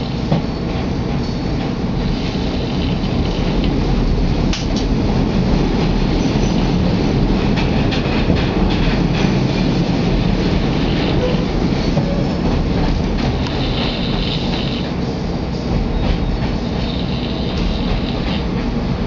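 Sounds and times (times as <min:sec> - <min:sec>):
wheels clicking over rails: 0:00.0 - 0:15.0, 0:15.7 - 0:19.0
train car rumbling: 0:00.0 - 0:19.0.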